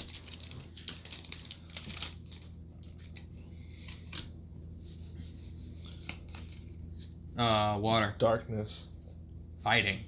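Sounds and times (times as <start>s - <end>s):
foil wrapper crinkling and tearing: 0.0s - 3.3s
cards rustling: 0.0s - 7.2s.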